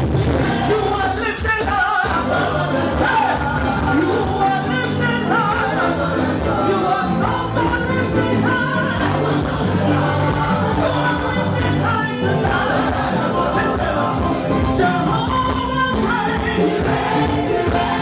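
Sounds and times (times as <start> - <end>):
band playing with singers: 0.0 - 18.0.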